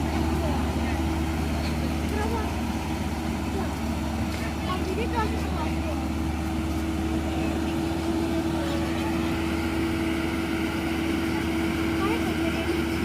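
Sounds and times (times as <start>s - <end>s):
combine harvester engine hum: 0.0s - 13.0s.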